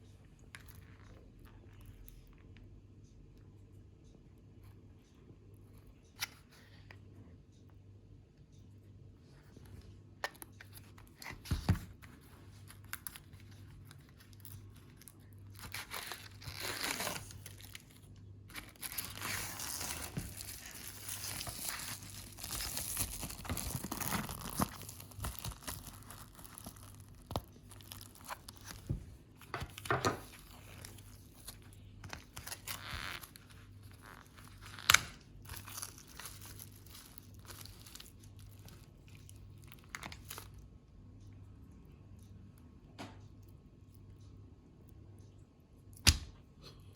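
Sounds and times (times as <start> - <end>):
plastic packaging crinkling and tearing: 10.4 - 40.6.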